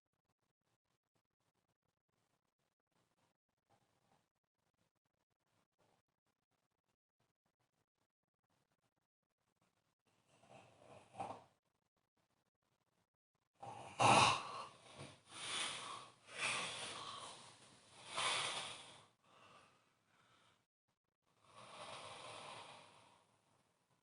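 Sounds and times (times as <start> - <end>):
person snoring: 13.6 - 19.2, 21.4 - 23.3.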